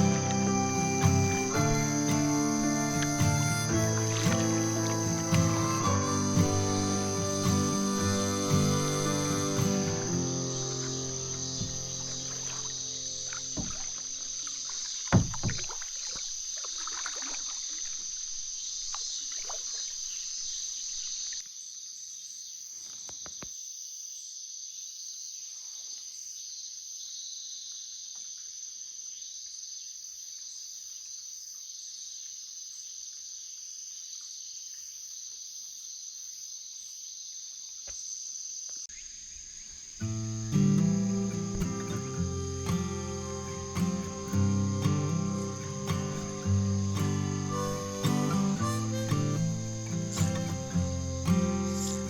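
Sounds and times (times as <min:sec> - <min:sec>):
canoe paddling water sounds: 0:00.0 - 0:20.6, 0:40.1 - 0:52.0
insects chirring: 0:00.0 - 0:52.0
knock on canoe hull: 0:13.6 - 0:13.9, 0:15.1 - 0:15.7.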